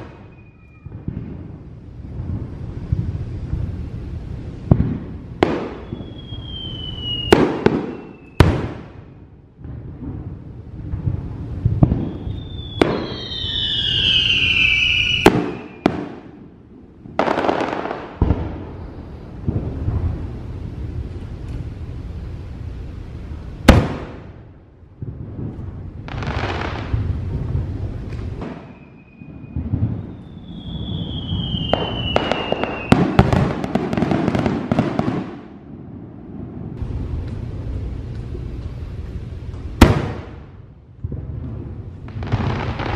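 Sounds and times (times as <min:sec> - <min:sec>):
falling firework whistle: 0:00.0 - 0:01.2, 0:05.4 - 0:08.8, 0:11.8 - 0:16.2, 0:28.1 - 0:35.2
firework bangs: 0:00.0 - 0:42.9
firework crackling: 0:00.0 - 0:42.9.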